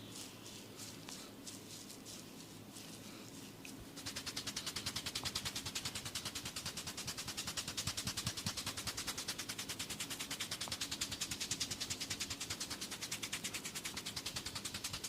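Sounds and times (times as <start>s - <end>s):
fast tapping on a head: 4.0s - 15.0s.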